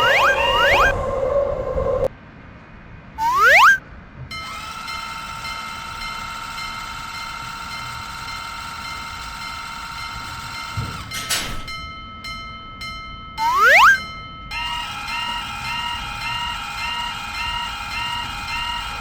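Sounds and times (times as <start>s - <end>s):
held electronic tones: 0.0s - 1.1s, 3.2s - 3.8s, 13.4s - 14.1s
rising cartoon boing: 3.2s - 3.8s, 13.4s - 14.0s.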